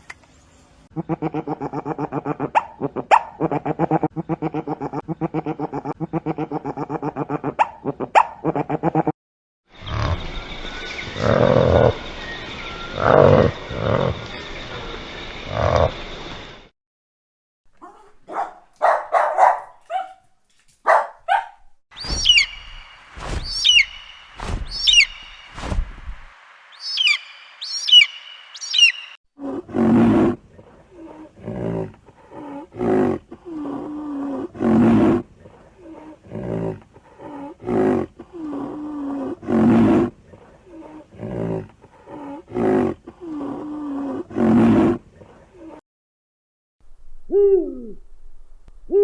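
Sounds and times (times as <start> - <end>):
short animal calls: 22.0 - 25.6
low thuds: 22.0 - 26.3
high animal calls sweeping down: 22.0 - 29.2
deep repeated animal calls: 22.0 - 30.4.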